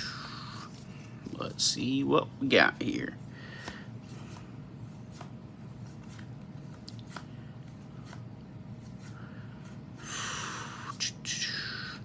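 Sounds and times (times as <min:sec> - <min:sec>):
cards being flipped through: 0:03.6 - 0:09.9.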